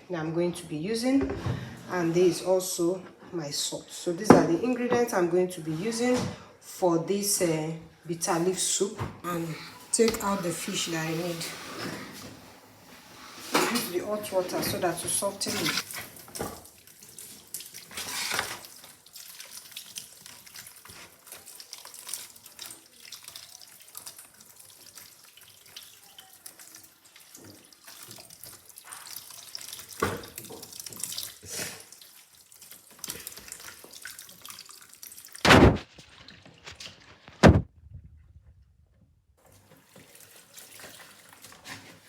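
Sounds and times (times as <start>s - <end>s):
water splashing and running: 8.3s - 37.6s, 39.4s - 42.0s
loud thumps: 35.4s - 35.9s, 37.4s - 38.2s.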